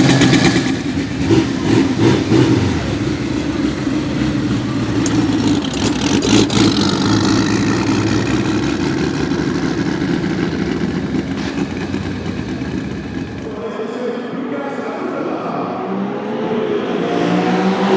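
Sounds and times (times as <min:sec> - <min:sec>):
car engine running at low revs: 0:00.0 - 0:13.6
sharp crack: 0:04.7 - 0:13.6.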